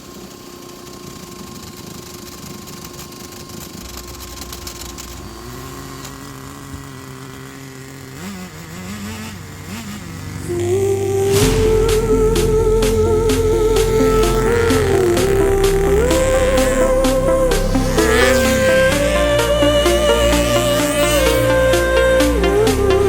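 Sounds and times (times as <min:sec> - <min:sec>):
nitro rc car engine running: 0:00.0 - 0:11.1.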